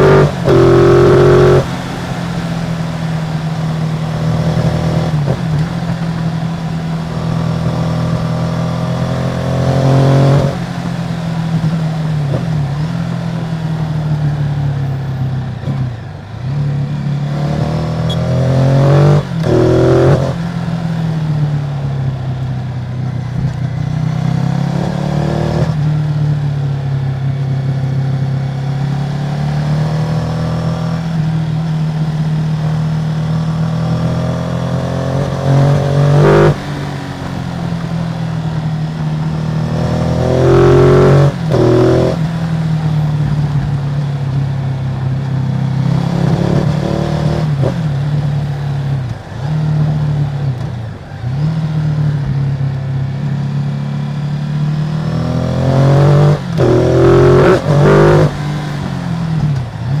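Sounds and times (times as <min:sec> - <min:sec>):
motorcycle engine revving: 0:00.0 - 1:00.0.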